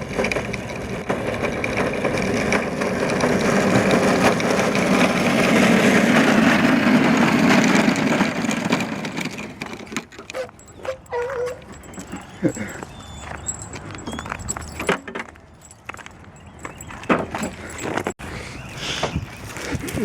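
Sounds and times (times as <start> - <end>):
go-kart driving past: 0.0 - 9.8.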